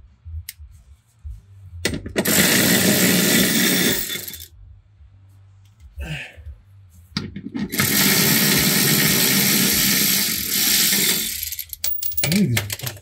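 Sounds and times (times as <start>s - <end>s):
power socket tool spinning: 2.2s - 4.5s, 7.7s - 11.8s.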